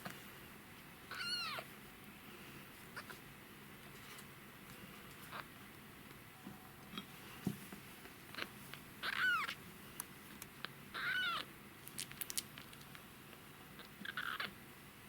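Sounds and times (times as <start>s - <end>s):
kitten mewing: 1.1s - 1.7s, 8.4s - 9.6s, 10.9s - 11.5s, 13.8s - 14.5s.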